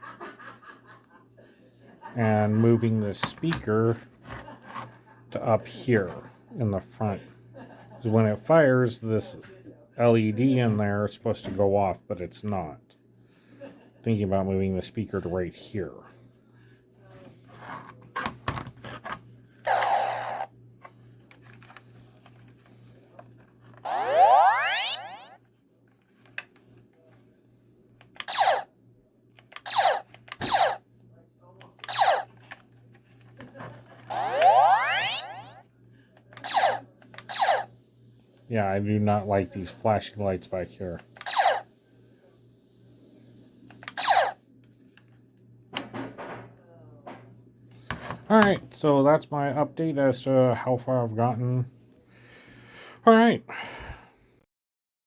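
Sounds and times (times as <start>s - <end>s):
toy blaster laser pew: 19.7s - 20.5s, 23.8s - 25.4s, 28.2s - 28.7s, 29.6s - 30.8s, 31.8s - 32.3s, 34.1s - 35.6s, 36.4s - 37.7s, 41.2s - 41.7s, 43.7s - 44.4s
electronic firing sound effect: 23.9s - 25.4s, 28.2s - 28.7s, 29.6s - 30.8s, 31.8s - 32.3s, 34.1s - 35.6s, 36.4s - 37.7s, 41.2s - 41.7s, 44.0s - 44.4s.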